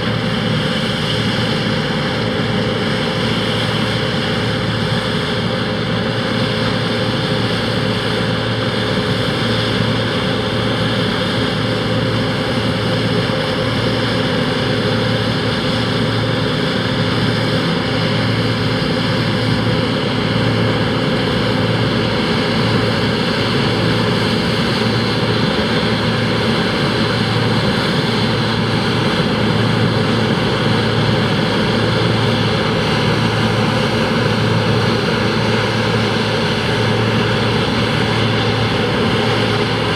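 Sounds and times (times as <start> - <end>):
combine harvester drone: 0.0 - 39.9.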